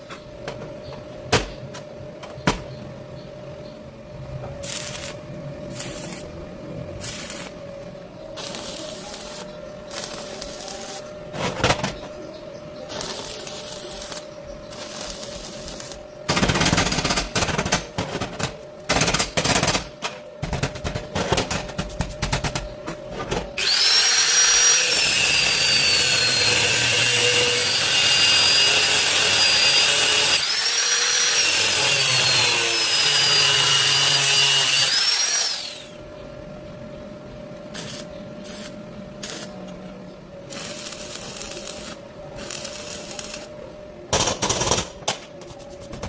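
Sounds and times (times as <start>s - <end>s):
power tool motor whining: 23.6s - 35.9s.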